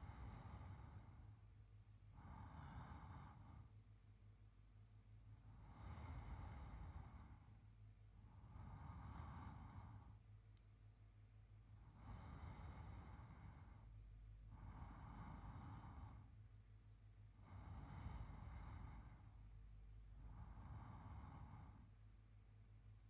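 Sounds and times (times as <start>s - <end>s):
man breathing in sleep: 0.0s - 1.4s, 2.1s - 3.8s, 5.4s - 7.6s, 8.2s - 10.2s, 11.8s - 16.4s, 17.4s - 19.4s, 20.2s - 21.9s.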